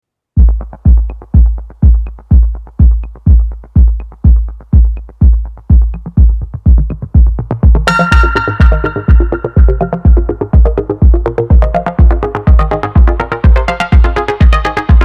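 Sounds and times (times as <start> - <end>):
heavy bass kick drum: 0.4 - 15.0
synth melody: 7.8 - 13.9.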